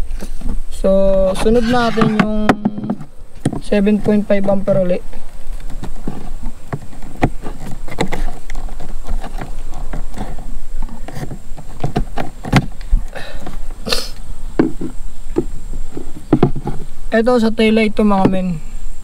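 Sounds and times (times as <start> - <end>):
brief hiss: 13.2 - 14.2.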